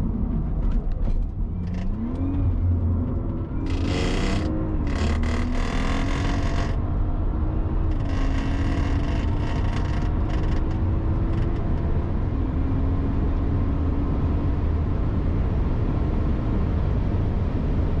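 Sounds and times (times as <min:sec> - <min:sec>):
car engine accelerating: 0:01.2 - 0:12.4
harsh rasping noise: 0:03.7 - 0:06.8, 0:07.9 - 0:10.8.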